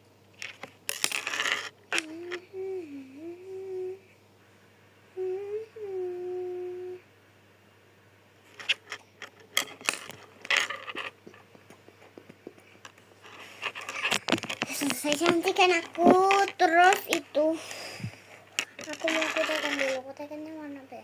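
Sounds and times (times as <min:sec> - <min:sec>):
small hard objects clattering: 0:00.4 - 0:02.1, 0:08.5 - 0:11.2, 0:12.9 - 0:17.4, 0:18.4 - 0:20.0
child humming: 0:02.0 - 0:04.1, 0:05.2 - 0:07.1.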